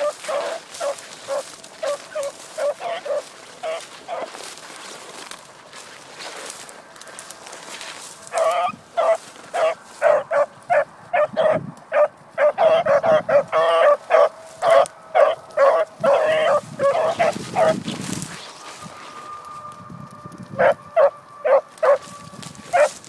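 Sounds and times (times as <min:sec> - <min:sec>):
dog barking: 0:00.0 - 0:04.4, 0:08.3 - 0:17.8, 0:20.6 - 0:22.1, 0:22.7 - 0:23.0.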